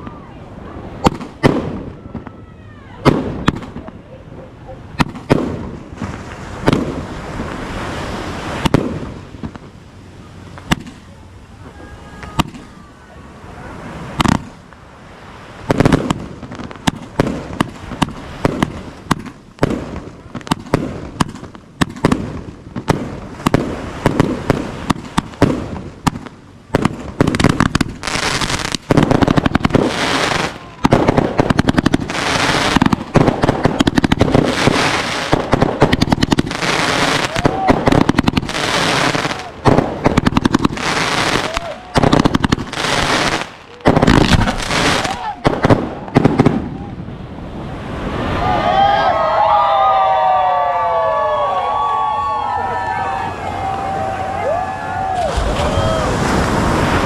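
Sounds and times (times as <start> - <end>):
aerial fireworks bangs and crackles: 1.0 - 2.4, 3.0 - 4.0, 5.0 - 9.8, 10.6 - 11.2, 12.2 - 12.8, 14.0 - 14.7, 15.6 - 46.9.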